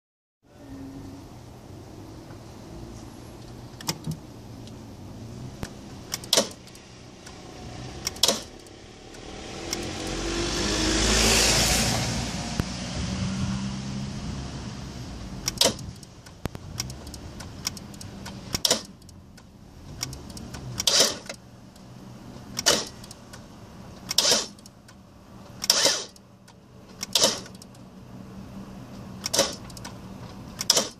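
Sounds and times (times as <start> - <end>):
sharp clicks of car starter: 3.4 - 4.8, 5.6 - 7.4, 8.0 - 9.9, 15.4 - 27.9, 29.2 - 30.9
broad swell of noise: 6.9 - 15.2.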